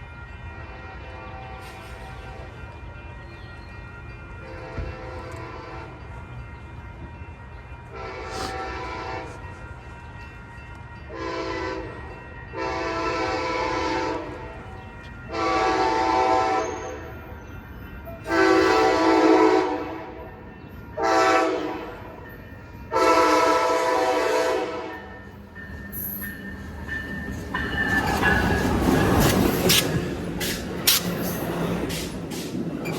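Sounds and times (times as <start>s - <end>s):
train rumbling and rattling: 0.0s - 32.9s
locomotive air horn blasts: 4.5s - 6.0s, 8.0s - 9.4s, 11.1s - 11.9s, 12.6s - 14.4s, 15.3s - 17.1s, 18.3s - 20.2s, 21.0s - 22.1s, 22.9s - 25.1s.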